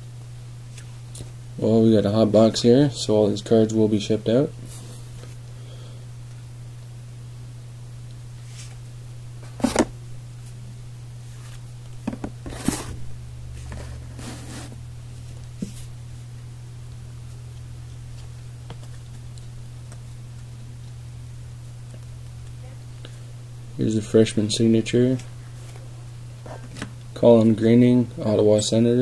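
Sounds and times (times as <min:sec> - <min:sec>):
low hum: 0:04.4 - 0:27.2.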